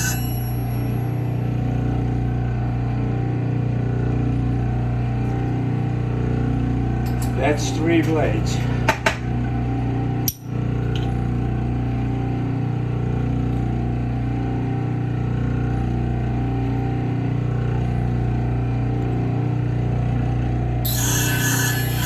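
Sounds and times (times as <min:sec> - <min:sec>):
sharpening machine humming: 0:00.0 - 0:02.2, 0:05.1 - 0:12.1, 0:20.8 - 0:22.0.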